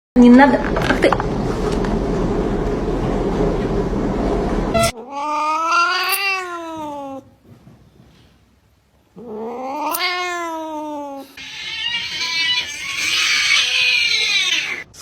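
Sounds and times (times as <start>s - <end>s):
cat yowling: 4.8s - 7.2s, 9.2s - 14.9s.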